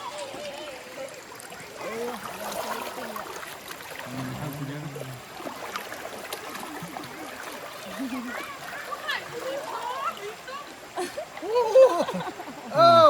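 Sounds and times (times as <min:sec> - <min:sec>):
stream water flowing: 0:00.0 - 0:13.0.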